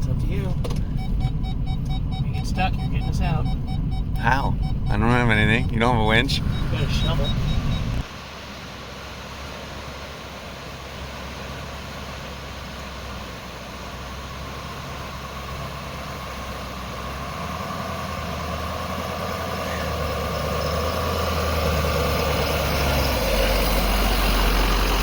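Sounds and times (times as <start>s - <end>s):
truck engine working: 0.0s - 25.0s.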